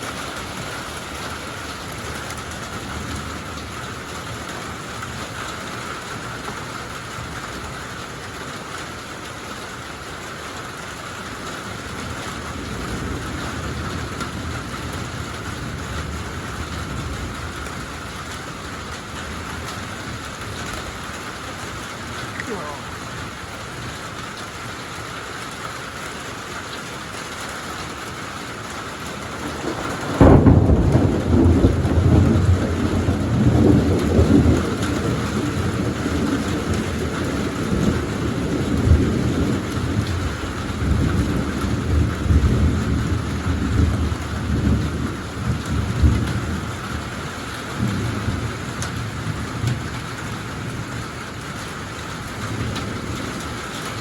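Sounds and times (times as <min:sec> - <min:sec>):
steady rain falling: 0:00.0 - 0:54.0
thunderclap rumbling: 0:29.1 - 0:47.2.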